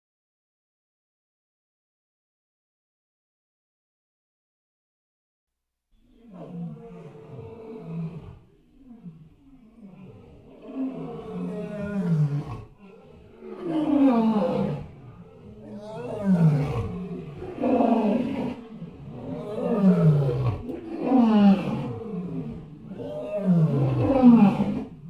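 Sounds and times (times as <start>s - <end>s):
lion roaring: 6.1s - 25.0s.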